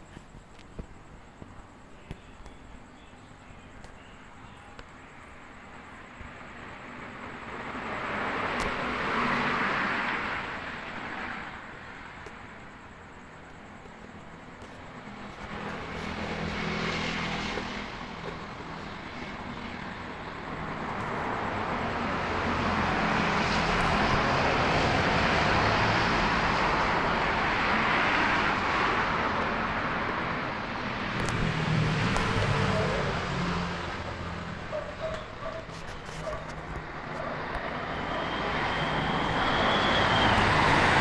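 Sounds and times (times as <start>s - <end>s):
strong gusting wind: 15.7s - 34.8s, 35.6s - 41.0s.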